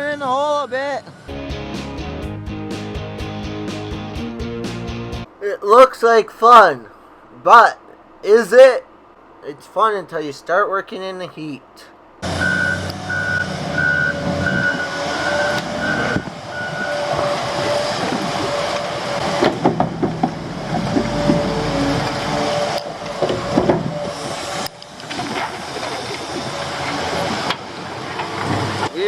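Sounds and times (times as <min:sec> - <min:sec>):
reversing alarm beeping: 0:12.2 - 0:19.0
diesel machinery engine whine: 0:12.2 - 0:28.9.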